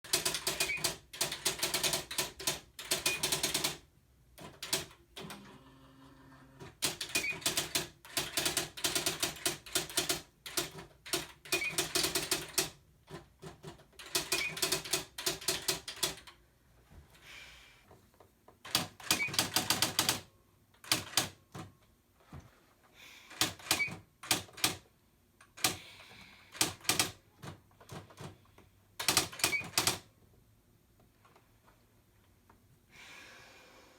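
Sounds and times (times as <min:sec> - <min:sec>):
typewriter key strikes: 0:06.8 - 0:12.8.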